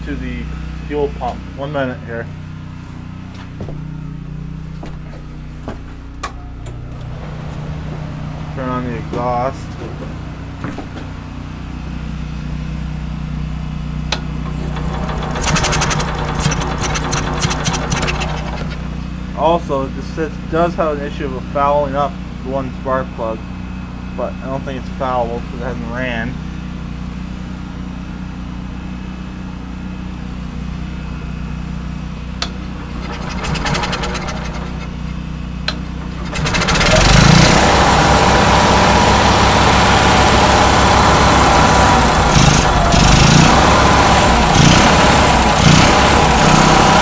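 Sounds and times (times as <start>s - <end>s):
small generator engine running: 0.0s - 25.8s, 26.4s - 47.0s
sharp clicks and rattles: 14.1s - 18.9s, 32.4s - 37.7s
engine sputtering: 14.2s - 19.2s, 32.4s - 47.0s.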